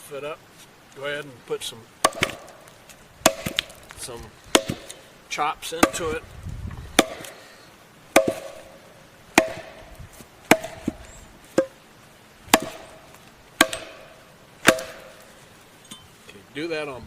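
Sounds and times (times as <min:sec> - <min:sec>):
axe chopping log: 0:02.0 - 0:05.0, 0:05.7 - 0:06.2, 0:06.9 - 0:07.4, 0:08.1 - 0:11.8, 0:12.5 - 0:15.3.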